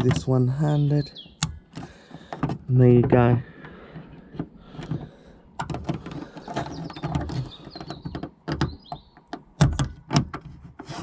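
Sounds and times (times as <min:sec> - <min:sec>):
plastic clicking and rattling: 0:01.4 - 0:11.0
short squeaks: 0:06.0 - 0:09.2.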